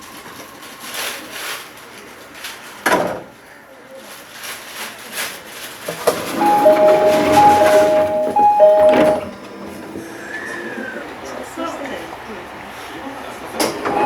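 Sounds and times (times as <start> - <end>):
two-tone door chime: 6.4 - 9.5.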